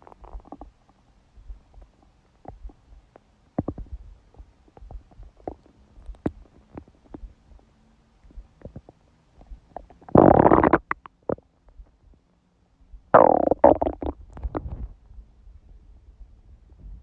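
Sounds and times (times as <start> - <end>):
loud stomach growl: 0.0 - 0.7, 9.8 - 11.4, 13.1 - 14.8
stomach gurgling: 0.0 - 0.8, 1.7 - 2.8, 3.6 - 7.4, 8.3 - 11.5, 13.1 - 14.9.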